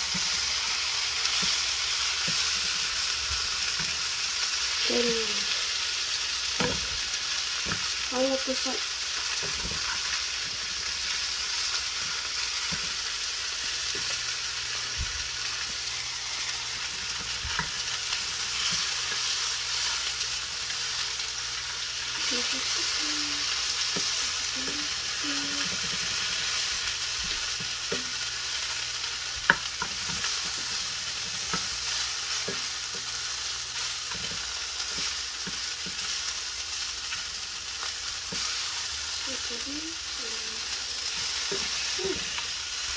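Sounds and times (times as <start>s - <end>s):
shrimp sizzling in frying pan: 0.0s - 42.9s.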